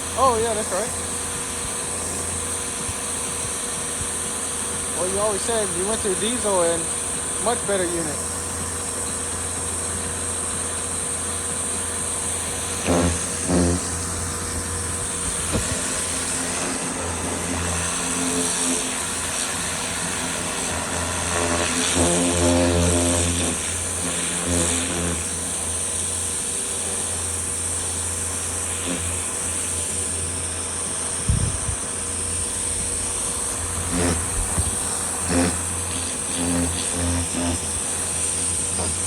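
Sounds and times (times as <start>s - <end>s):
motor hum: 0.0s - 39.0s
pressure washer spraying: 0.0s - 39.0s.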